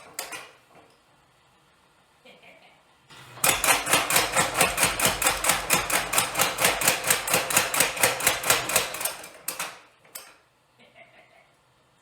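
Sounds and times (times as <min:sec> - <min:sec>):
power hammer pounding: 0:03.1 - 0:09.6.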